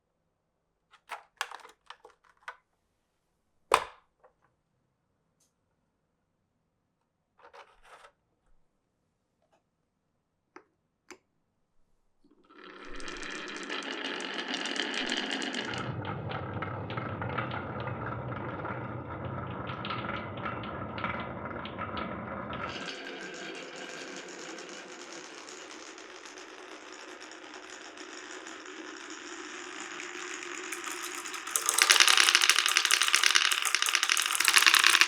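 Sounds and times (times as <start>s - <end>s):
marbles rattling on wooden run: 12.5s - 35.0s.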